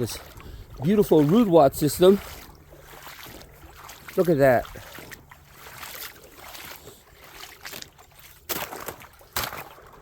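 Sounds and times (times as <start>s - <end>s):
footsteps splashing through creek: 0.0s - 10.0s.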